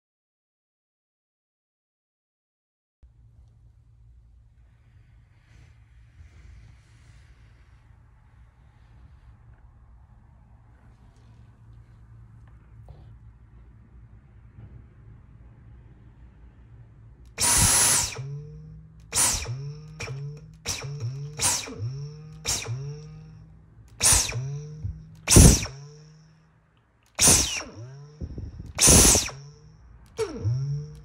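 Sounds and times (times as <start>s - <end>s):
vacuum cleaner motor bursts: 17.3s - 26.2s, 27.1s - 31.0s.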